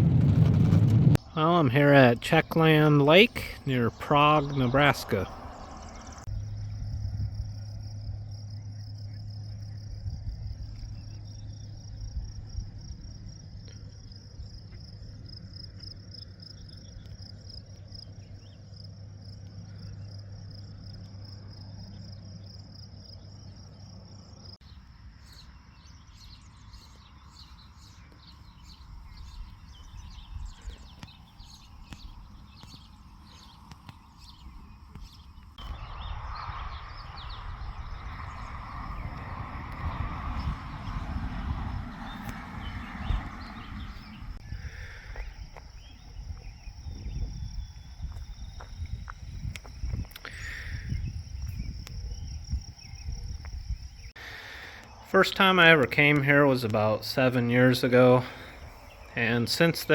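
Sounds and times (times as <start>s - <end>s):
low steady hum: 0.0s - 15.2s
insects trilling: 1.2s - 59.9s.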